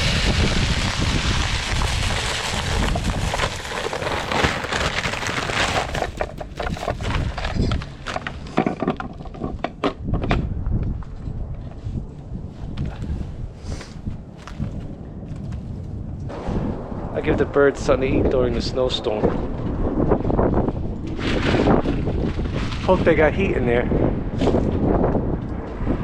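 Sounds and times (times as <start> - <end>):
wind on microphone: 0.0 - 26.0
footsteps in snow: 1.4 - 8.0, 12.6 - 15.8.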